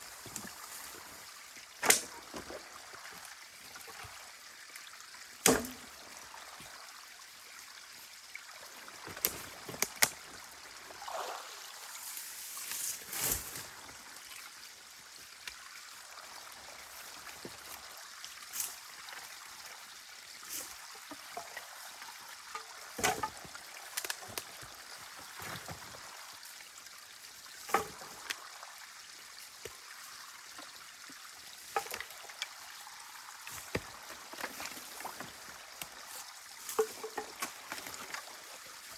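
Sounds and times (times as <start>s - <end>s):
water trickling in a channel: 0.0s - 38.9s
sharp knocks and snaps: 1.8s - 2.3s.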